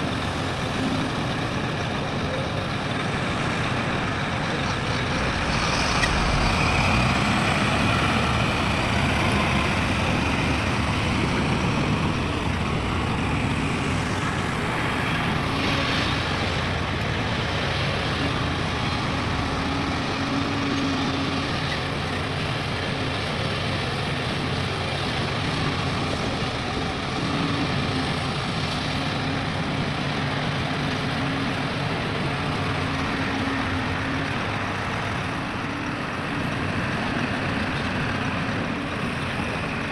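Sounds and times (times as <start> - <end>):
diesel construction machinery running: 0.0 - 39.9.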